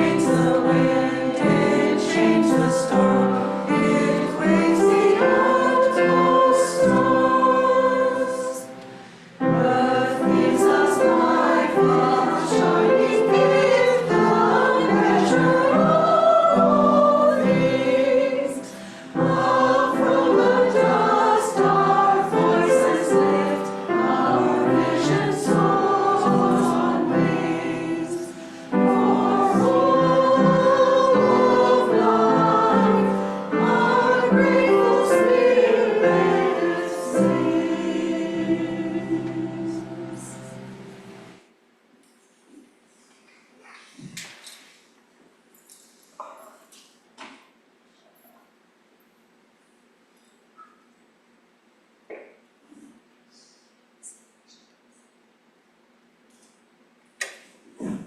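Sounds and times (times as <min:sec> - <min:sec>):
piano accompaniment: 0:00.0 - 0:41.4
group singing slow song: 0:00.0 - 0:41.5.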